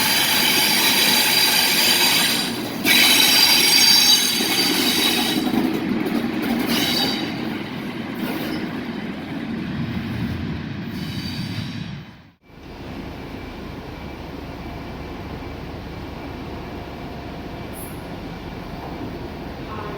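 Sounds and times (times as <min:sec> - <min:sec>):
train wheels squealing: 0:00.0 - 0:05.7, 0:06.4 - 0:09.0
train rumbling and clattering on track: 0:00.0 - 0:19.9.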